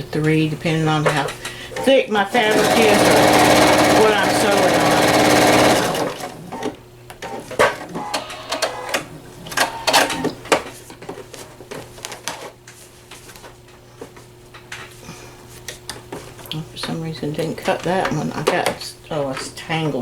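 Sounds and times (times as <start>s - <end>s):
sewing machine stitching: 1.8s - 9.0s.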